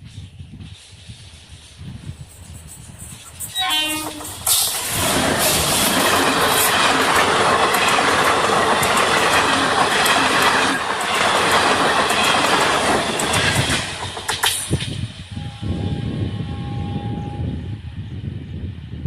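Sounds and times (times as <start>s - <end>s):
train passing rumble: 0.0s - 19.0s
wheels clattering over rail joints: 4.1s - 14.9s.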